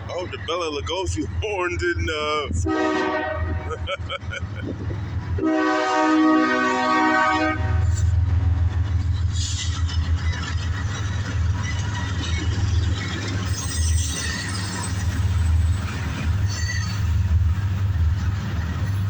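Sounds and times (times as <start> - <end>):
freight train rumbling past: 0.0 - 19.0
locomotive air horn chord: 2.6 - 3.8, 5.4 - 8.2.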